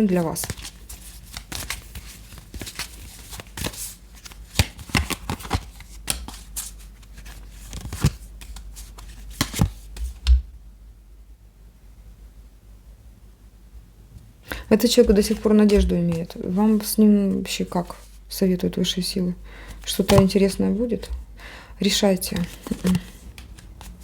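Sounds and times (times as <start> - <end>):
cards being shuffled by hand: 0.0 - 10.4, 14.5 - 18.2, 19.7 - 21.2, 21.8 - 24.0.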